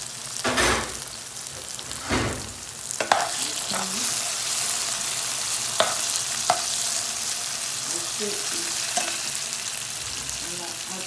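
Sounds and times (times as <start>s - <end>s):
meat sizzling in a pot: 0.0s - 11.0s
spoon knocking against pot: 5.8s - 6.7s.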